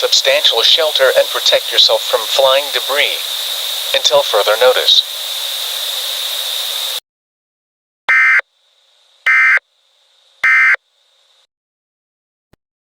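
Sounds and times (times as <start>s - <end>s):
steady hiss: 0.0s - 7.0s
screechy digital data tones: 8.1s - 8.4s, 9.3s - 9.6s, 10.4s - 10.8s.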